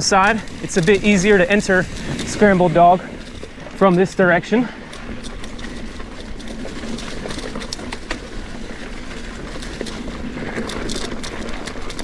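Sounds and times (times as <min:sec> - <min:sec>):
bike clicks and rattles: 0:00.0 - 0:12.0
bike tyres on dirt: 0:00.0 - 0:12.0.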